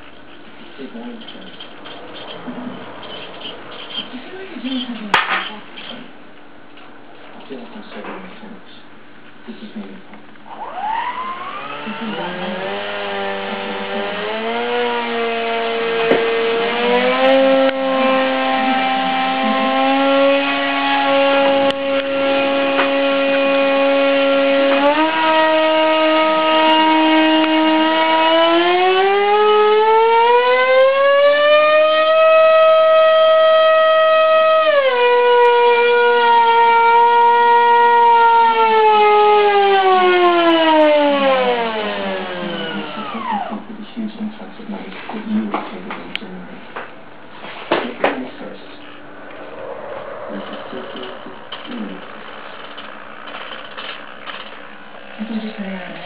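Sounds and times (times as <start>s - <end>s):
model plane motor whine: 10.5s - 43.5s.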